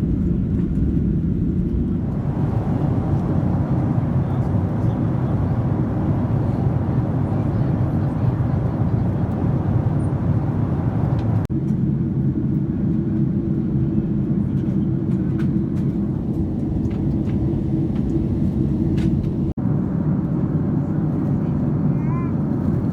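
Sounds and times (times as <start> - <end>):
jet engine cabin hum: 0.0 - 22.9
rushing air: 2.0 - 11.5.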